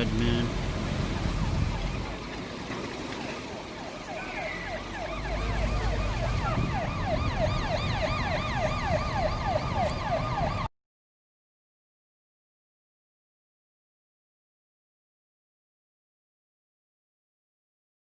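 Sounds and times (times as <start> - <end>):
low traffic rumble: 0.0 - 10.7
siren yelping: 1.0 - 2.3, 3.0 - 10.7.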